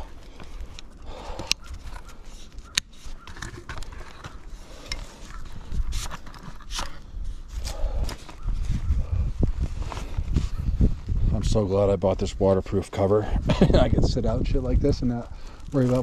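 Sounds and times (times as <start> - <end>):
camera gear rustling and clicking: 0.1 - 8.7.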